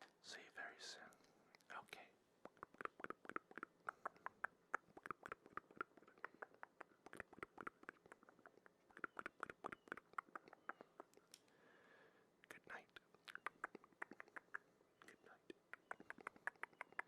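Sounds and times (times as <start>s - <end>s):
wet mouth clicks and smacks: 2.4s - 11.5s, 12.4s - 17.0s.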